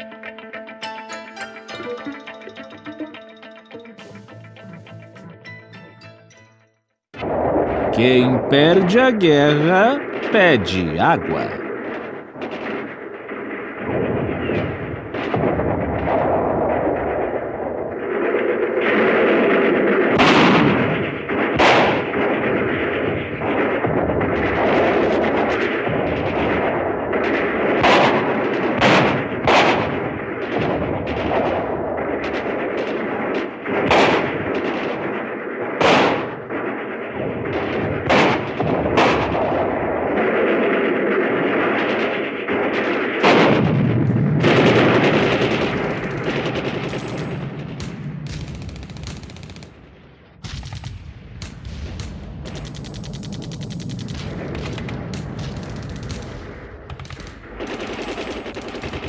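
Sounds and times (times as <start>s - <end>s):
explosions: 7.2s - 59.0s
gunshots: 7.7s - 59.0s
machine-gun burst: 18.0s - 49.8s, 52.0s - 59.0s.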